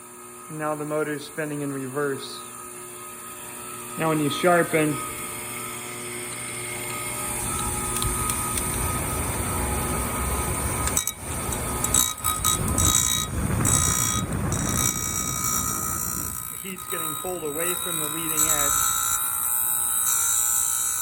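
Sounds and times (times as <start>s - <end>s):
grinder motor whirring: 0.0s - 21.0s
grinding wheel rasping on chain: 3.9s - 5.8s, 6.8s - 21.0s.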